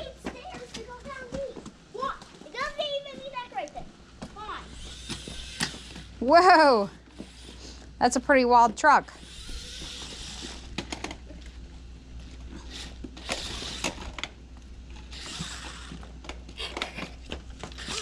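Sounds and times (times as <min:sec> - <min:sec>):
toy car motor whirring: 0:04.4 - 0:07.8, 0:09.0 - 0:11.2, 0:12.5 - 0:14.3, 0:15.0 - 0:18.0.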